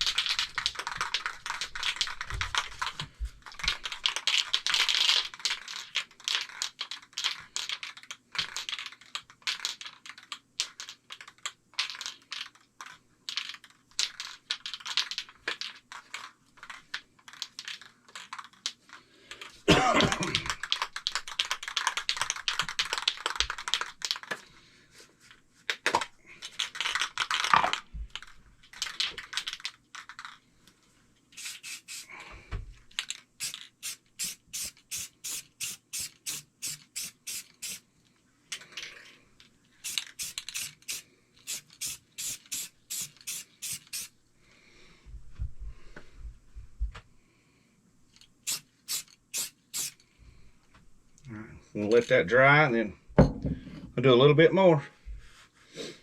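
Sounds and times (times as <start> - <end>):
sharp little clicks and crackles: 0.0 - 19.5, 20.1 - 24.5, 25.7 - 32.2, 32.9 - 44.1
spray can hissing: 31.3 - 32.1, 33.4 - 37.8, 39.8 - 44.2, 48.4 - 50.0.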